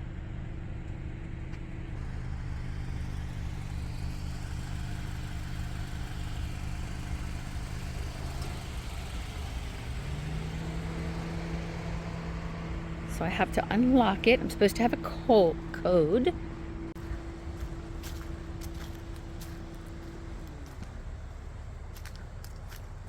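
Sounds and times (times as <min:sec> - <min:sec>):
car engine rumble from inside: 0:00.0 - 0:23.0.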